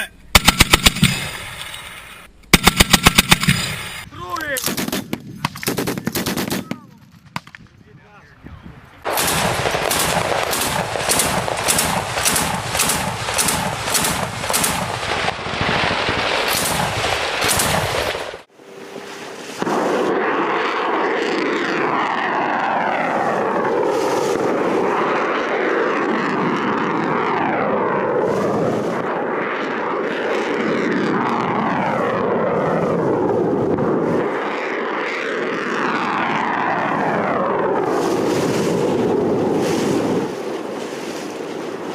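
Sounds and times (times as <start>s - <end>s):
machine-gun fire: 0.3s - 1.7s, 2.5s - 4.0s, 4.6s - 7.5s, 9.1s - 18.5s
rush of missiles in flight: 0.3s - 7.8s, 8.9s - 41.9s.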